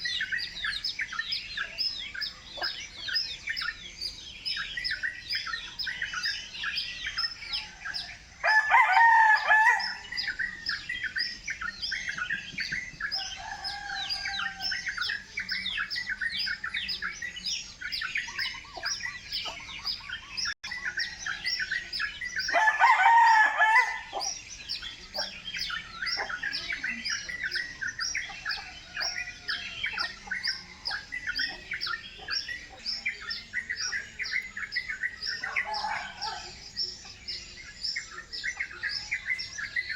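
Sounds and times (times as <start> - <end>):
chickens chirping: 0.0 - 39.9
rooster crowing: 7.5 - 10.4, 13.1 - 15.2, 22.4 - 24.4, 35.4 - 36.6.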